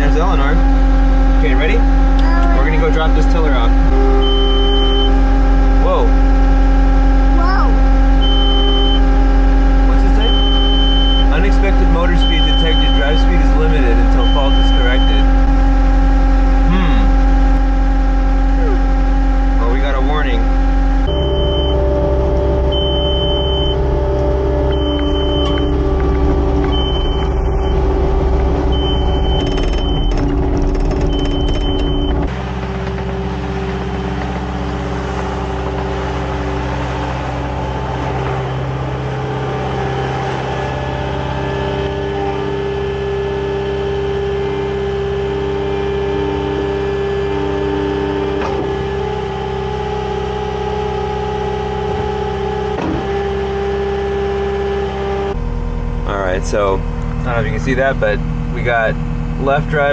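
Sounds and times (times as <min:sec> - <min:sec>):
skid steer engine running: 0:00.0 - 0:59.9
high warning beep: 0:03.9 - 0:05.2, 0:08.2 - 0:09.2, 0:10.1 - 0:11.4, 0:12.1 - 0:13.3, 0:14.0 - 0:15.4, 0:21.1 - 0:21.9, 0:22.7 - 0:23.8, 0:24.7 - 0:25.8, 0:26.6 - 0:27.9, 0:28.7 - 0:30.3, 0:31.0 - 0:32.3.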